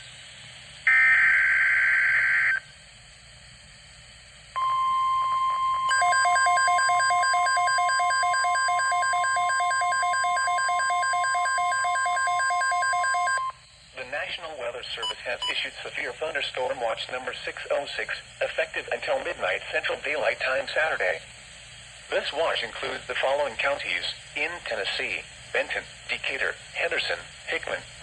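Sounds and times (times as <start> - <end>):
steady warning tone: 4.6 - 15.7.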